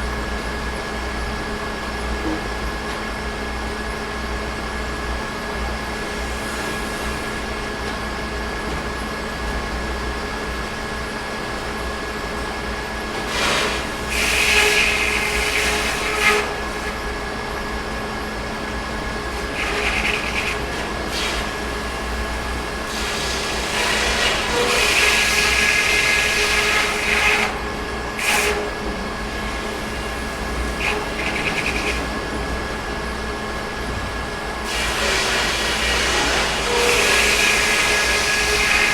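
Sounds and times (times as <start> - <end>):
sawmill machinery humming: 0.0 - 38.9.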